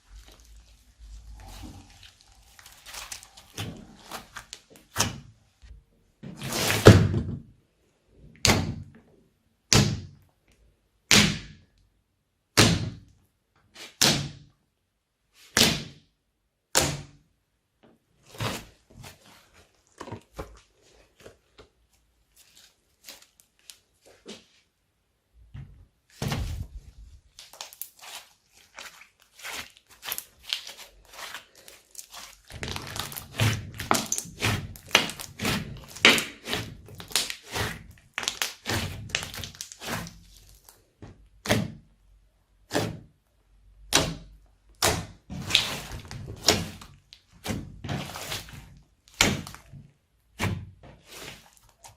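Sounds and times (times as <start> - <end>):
slime popping and squishing: 0.0 - 5.4, 27.3 - 41.9, 43.8 - 49.7.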